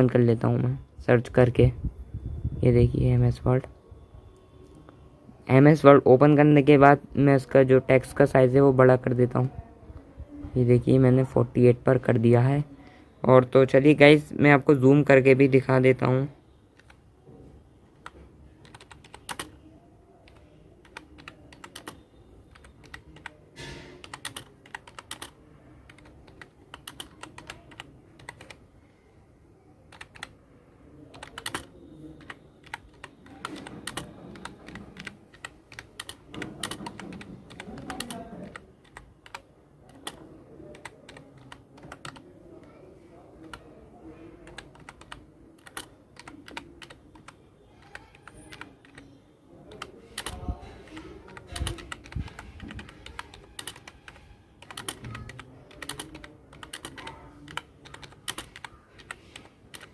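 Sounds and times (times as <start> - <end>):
keyboard key clicks: 18.0 - 19.5, 20.2 - 23.4, 24.0 - 25.3, 25.9 - 28.6, 31.1 - 42.8, 44.4 - 49.1, 49.7 - 59.9.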